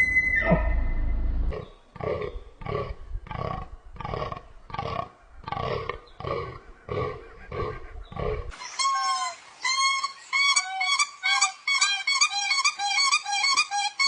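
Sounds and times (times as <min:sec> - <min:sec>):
animal rumbling call: 0:00.0 - 0:08.6
animal grunting calls: 0:01.4 - 0:08.6.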